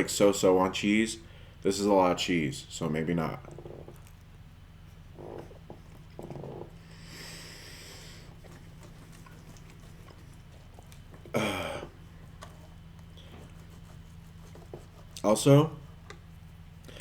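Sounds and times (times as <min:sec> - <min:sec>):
low electrical hum: 0:00.0 - 0:17.0
nasal sniff: 0:04.9 - 0:10.9.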